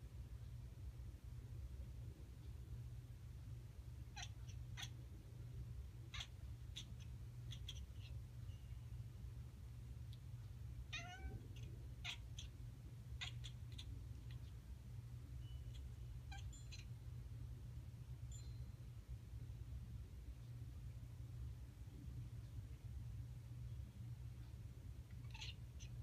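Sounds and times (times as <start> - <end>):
cat making bark-like calls: 10.9 - 12.5, 25.3 - 25.9.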